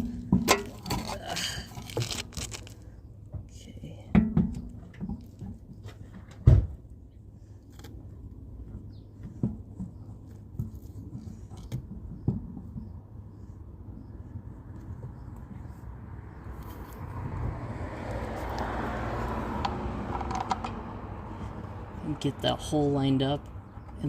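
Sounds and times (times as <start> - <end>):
wheel knocking against hub: 0.0 - 2.0, 9.3 - 13.1.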